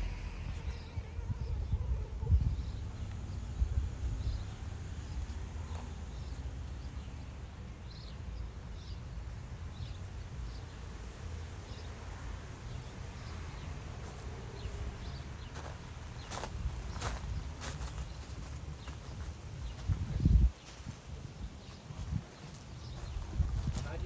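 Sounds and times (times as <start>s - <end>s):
faint high chirps: 0.0s - 7.1s
wind rumble on microphone: 0.0s - 24.0s.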